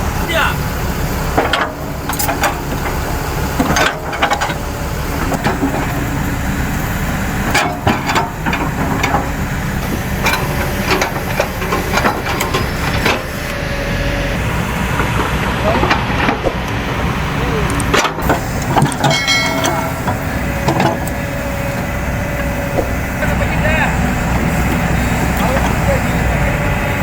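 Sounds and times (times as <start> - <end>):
engine drone: 0.0 - 27.0
metal clanks: 1.4 - 3.0, 3.6 - 6.6, 7.4 - 13.5, 17.7 - 26.1.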